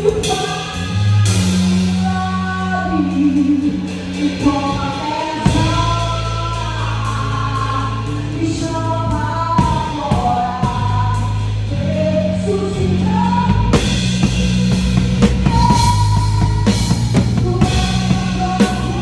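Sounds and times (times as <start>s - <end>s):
long held bass notes: 0.0s - 19.0s
drum and cymbal hits: 13.0s - 19.0s.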